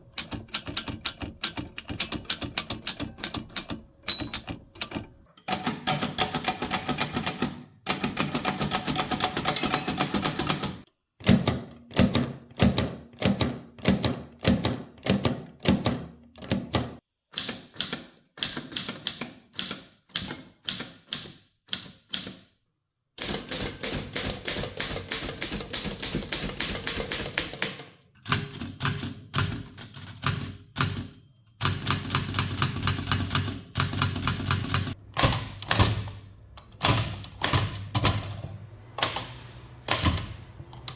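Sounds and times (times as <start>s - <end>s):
typewriter clacking: 0.2s - 10.8s, 23.2s - 31.1s.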